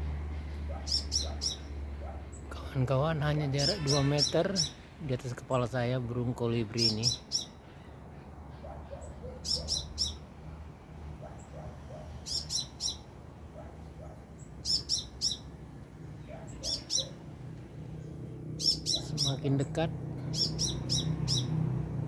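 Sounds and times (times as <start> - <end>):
sunbird high chirps: 0.7 - 2.6, 3.3 - 4.9, 6.6 - 7.9, 9.0 - 10.3, 12.1 - 13.1, 14.4 - 15.6, 16.2 - 17.3, 18.6 - 21.7.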